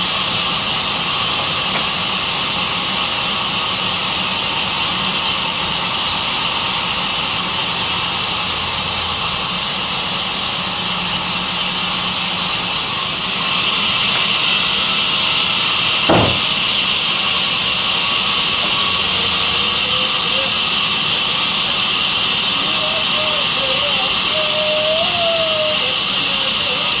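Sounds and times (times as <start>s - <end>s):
sawmill saw running: 0.0s - 27.0s
short knock: 16.1s - 16.6s.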